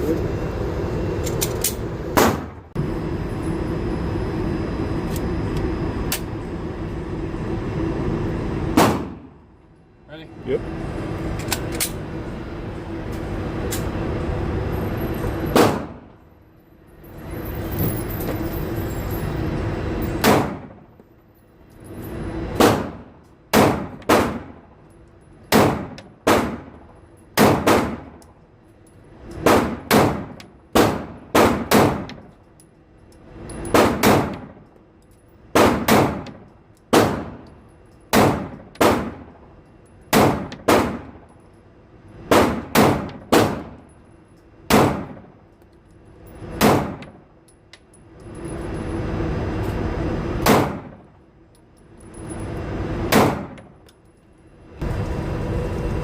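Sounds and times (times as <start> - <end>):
pistol shots: 2.2 - 2.6, 8.7 - 9.3, 15.5 - 16.0, 20.2 - 20.8, 22.6 - 24.6, 25.5 - 26.8, 27.4 - 28.2, 29.4 - 32.2, 33.7 - 34.5, 35.5 - 37.4, 38.1 - 39.3, 40.1 - 41.2, 42.3 - 43.8, 44.7 - 45.3, 46.6 - 47.2, 50.4 - 51.0, 53.1 - 53.6.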